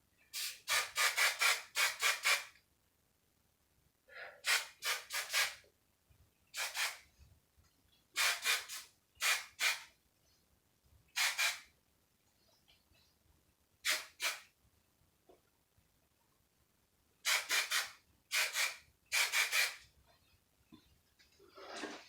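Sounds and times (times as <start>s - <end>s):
hairspray spritzing: 0.4s - 2.5s, 6.6s - 7.0s, 8.2s - 9.9s, 11.2s - 11.7s, 13.8s - 14.4s, 17.2s - 19.8s.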